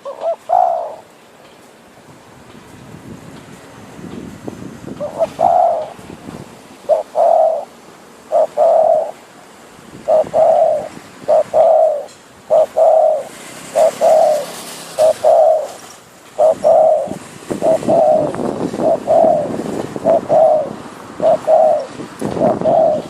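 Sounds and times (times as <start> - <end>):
dove cooing: 0.0 - 1.1, 5.0 - 6.0, 6.8 - 9.2, 10.0 - 23.0.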